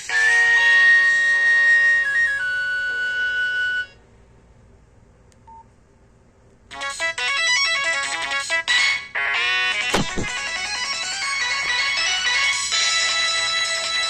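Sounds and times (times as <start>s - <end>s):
phone ringtone melody: 0.0s - 4.0s, 6.7s - 14.0s.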